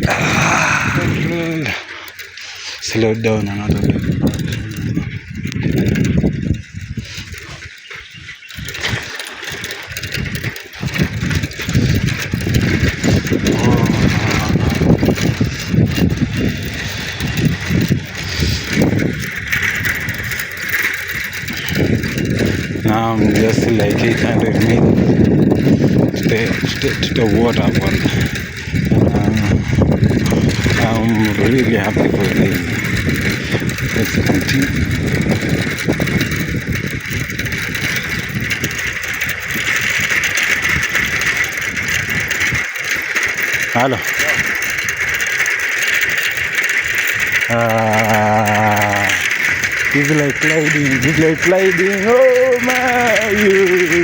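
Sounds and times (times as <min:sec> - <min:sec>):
bicycle rolling noise: 0:00.0 - 0:54.0
wind buffeting microphone: 0:00.0 - 0:54.0
steady rushing noise: 0:09.6 - 0:43.0
low rumble: 0:10.2 - 0:39.7.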